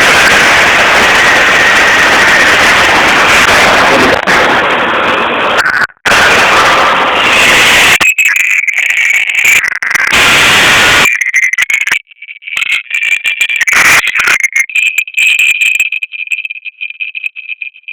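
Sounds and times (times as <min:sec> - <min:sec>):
arc welding crackling hiss: 0:00.0 - 0:08.0, 0:10.1 - 0:11.1
thin high whine: 0:00.0 - 0:12.0.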